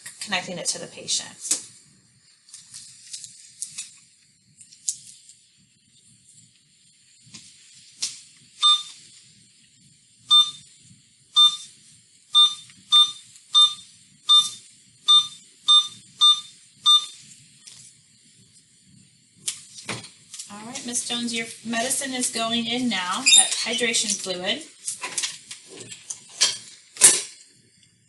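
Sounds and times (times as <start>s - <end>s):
infusion pump beeping: 8.6s - 9.0s, 10.3s - 10.7s, 11.4s - 17.2s.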